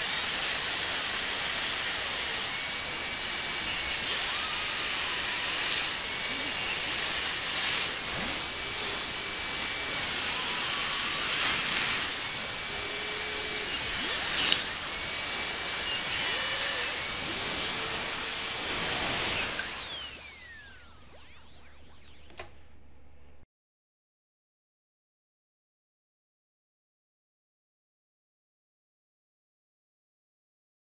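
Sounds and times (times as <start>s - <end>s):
dental drill whining: 0.0s - 22.6s.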